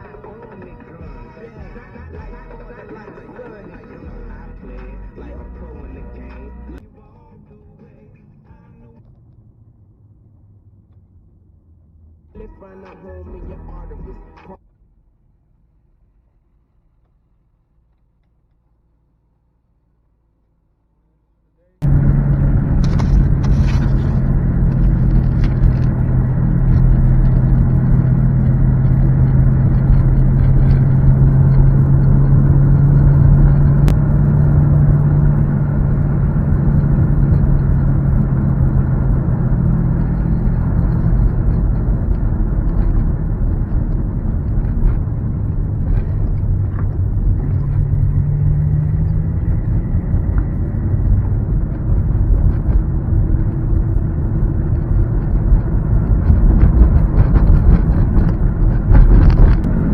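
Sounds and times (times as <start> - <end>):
boat motor running: 21.8 - 48.6.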